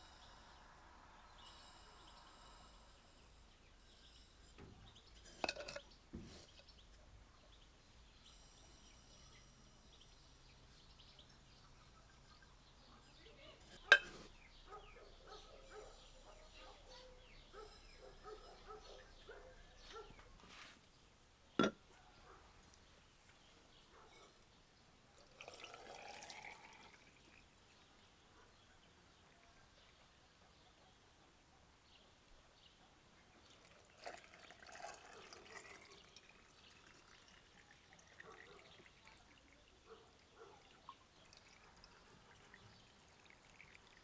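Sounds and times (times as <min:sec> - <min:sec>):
faint bird chirping: 0:00.0 - 0:25.3.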